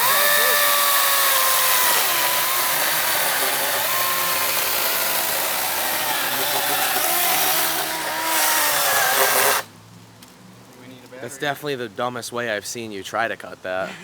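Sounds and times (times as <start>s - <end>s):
electric chainsaw cutting wood: 0.0s - 9.7s.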